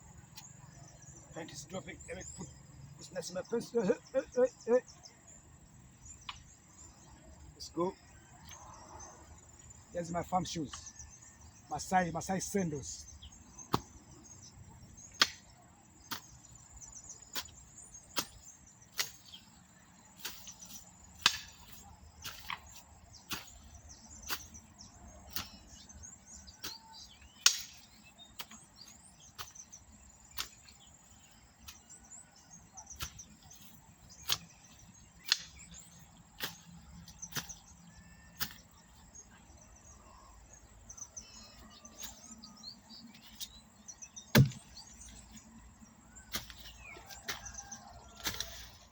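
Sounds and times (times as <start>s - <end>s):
hand tool chopping: 16.1s - 16.4s, 18.2s - 19.3s, 20.2s - 24.6s, 25.3s - 25.8s, 26.4s - 28.7s, 29.4s - 31.9s, 32.9s - 37.7s, 38.4s - 38.7s, 44.3s - 45.2s, 46.3s - 48.8s.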